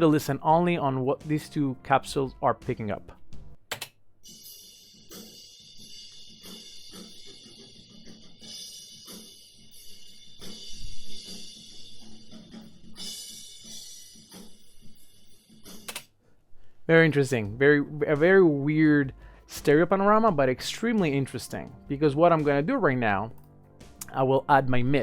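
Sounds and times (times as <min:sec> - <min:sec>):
cymbals and hi-hat: 0:12.9 - 0:14.4.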